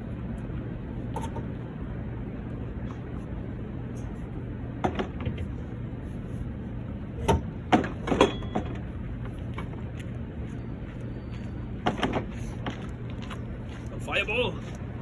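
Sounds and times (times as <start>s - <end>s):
exhaust pipe clanking on metal: 7.2s - 8.9s.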